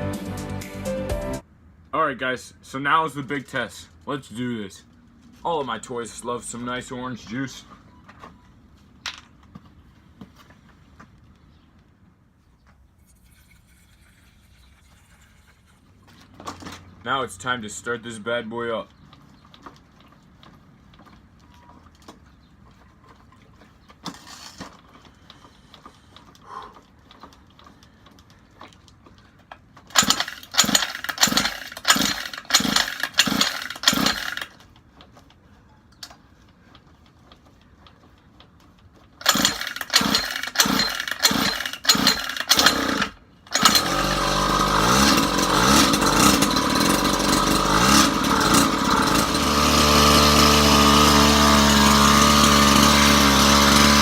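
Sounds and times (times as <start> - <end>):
dirt bike engine turning over: 29.8 - 35.3, 39.0 - 54.0
dirt bike engine revving: 30.0 - 34.5, 39.2 - 54.0.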